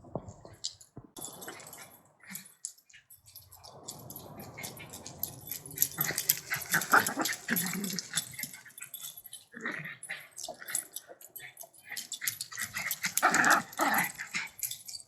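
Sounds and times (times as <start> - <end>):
rustling: 0.0 - 9.3
dog vocalizing: 5.8 - 8.7.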